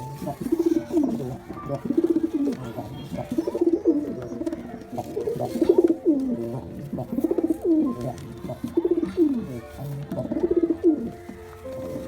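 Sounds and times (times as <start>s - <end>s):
pigeons cooing: 0.0s - 12.0s.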